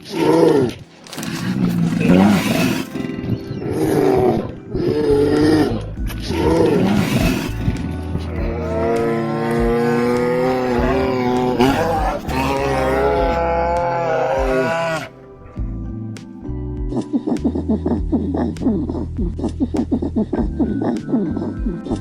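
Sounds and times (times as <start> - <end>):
lion roaring: 0.0 - 3.0, 3.7 - 15.2
background music: 0.0 - 22.0.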